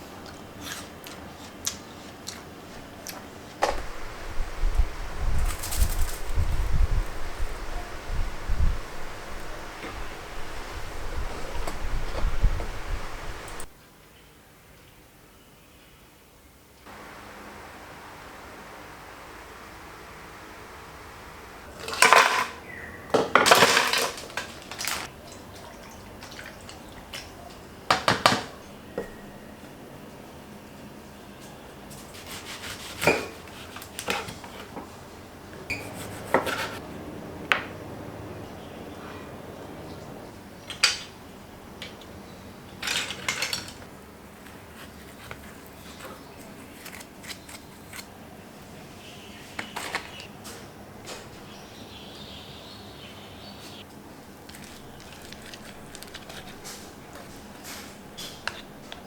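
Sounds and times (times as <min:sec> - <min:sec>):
dishes and utensils clattering: 0:21.7 - 0:22.6, 0:23.2 - 0:25.1, 0:42.8 - 0:43.9.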